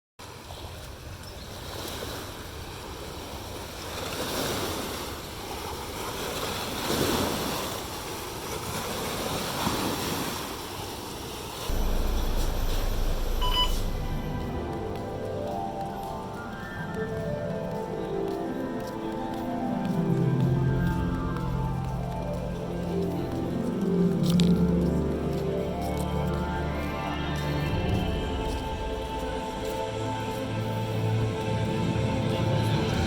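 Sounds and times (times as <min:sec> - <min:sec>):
wind: 0:00.2 - 0:33.0
sea waves washing: 0:00.4 - 0:33.0
short beep: 0:11.7 - 0:15.0
loud low rumble: 0:11.7 - 0:15.8.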